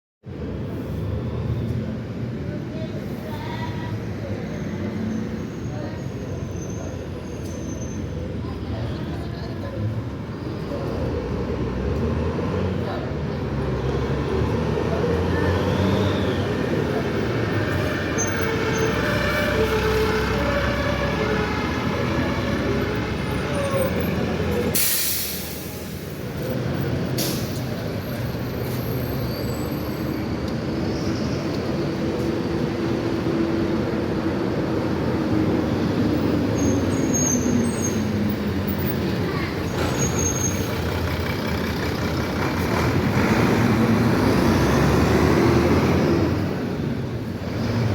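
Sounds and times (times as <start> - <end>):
diesel bus engines revving: 9.1 - 47.9
air brakes hissing: 24.6 - 26.2, 27.2 - 27.8.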